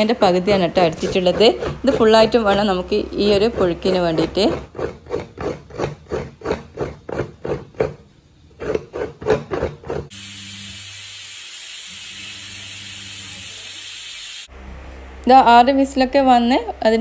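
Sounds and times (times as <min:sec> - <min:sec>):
coconut grater scraping: 0:00.5 - 0:10.1
steady hiss: 0:10.1 - 0:14.5.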